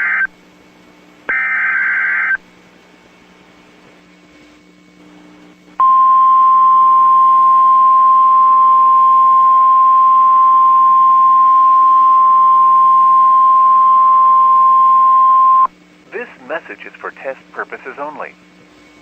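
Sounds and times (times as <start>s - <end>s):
steady high alarm tone: 1.3s - 2.4s, 5.8s - 15.7s.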